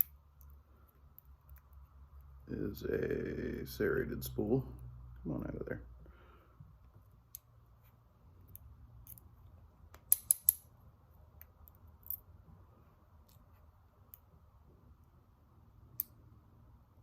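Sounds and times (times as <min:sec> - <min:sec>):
small metallic clicks and taps: 0:09.9 - 0:10.7.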